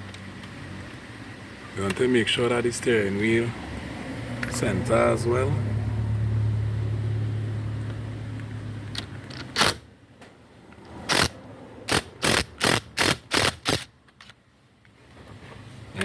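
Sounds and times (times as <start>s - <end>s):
impact driver bursts: 9.3s - 9.8s, 11.1s - 13.9s.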